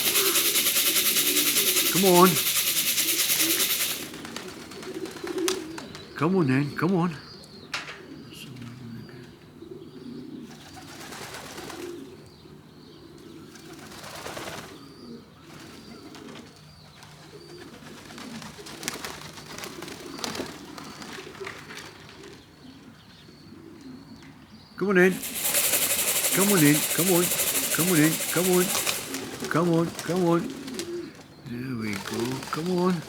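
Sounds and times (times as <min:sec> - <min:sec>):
rustling noise: 0:00.0 - 0:04.2, 0:25.0 - 0:30.4
pigeons cooing: 0:00.0 - 0:06.2, 0:07.3 - 0:33.0.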